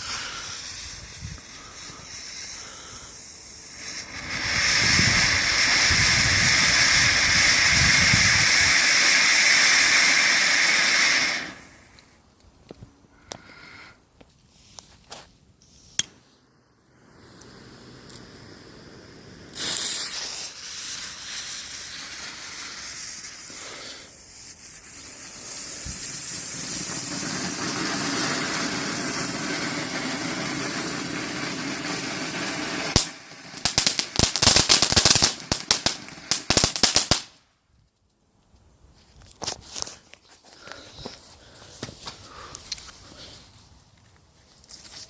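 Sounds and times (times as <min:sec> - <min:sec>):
fountain firework hissing: 0:00.0 - 0:12.0, 0:16.9 - 0:37.3
firework crackles and pops: 0:00.0 - 0:12.2, 0:17.0 - 0:38.0.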